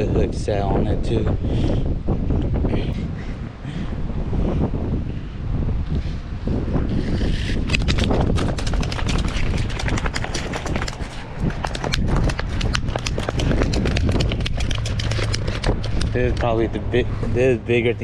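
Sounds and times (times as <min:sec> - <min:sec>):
wind rumble on microphone: 0:00.0 - 0:18.0
rapid clicks and knocks: 0:07.7 - 0:16.5.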